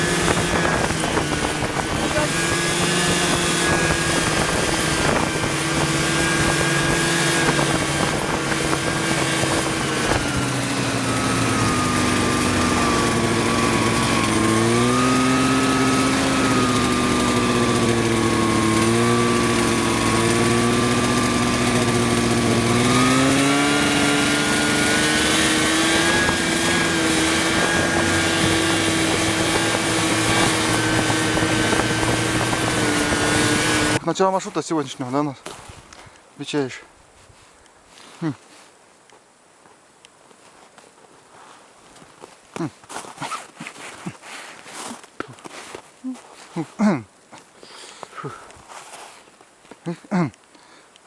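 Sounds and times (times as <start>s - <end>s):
vehicle engine running under load: 0.0s - 34.0s.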